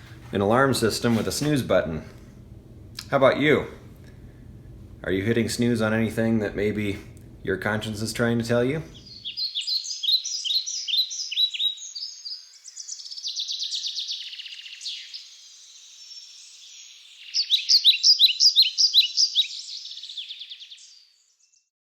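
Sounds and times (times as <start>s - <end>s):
songbirds chirping: 0.0s - 21.7s
bird trill: 9.0s - 21.7s.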